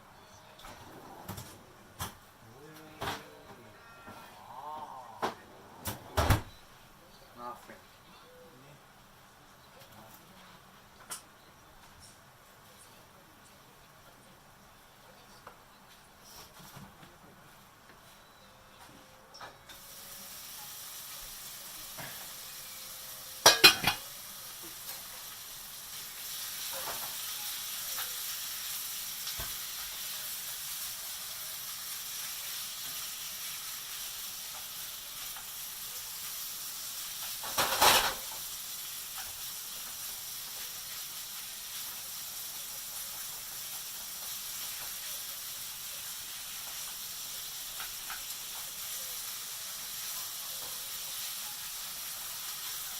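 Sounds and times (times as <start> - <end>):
food sizzling in a frying pan: 19.4 - 52.9.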